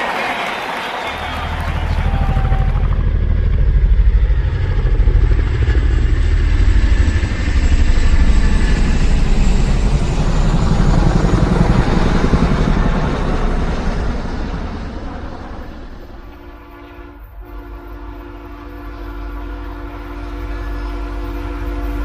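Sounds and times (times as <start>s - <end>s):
pulsing vehicle engine rumble: 1.2s - 16.7s.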